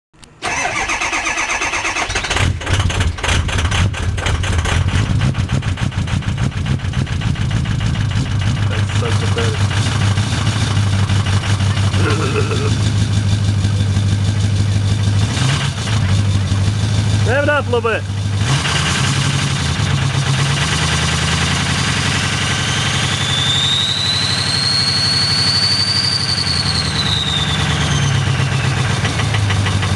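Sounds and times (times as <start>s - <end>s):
engine cranking on starter: 0.4s - 13.8s, 28.1s - 29.9s
engine cold idle: 0.4s - 18.4s, 22.1s - 29.9s
high whine rising in pitch: 22.3s - 28.6s.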